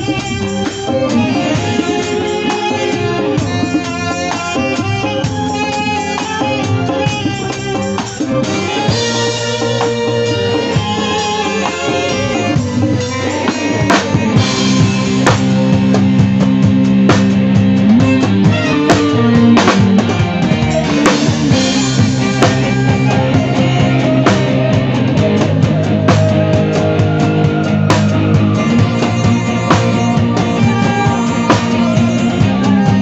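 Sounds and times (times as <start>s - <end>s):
live band playing: 0.0s - 33.0s
drum kit hits: 12.6s - 33.0s.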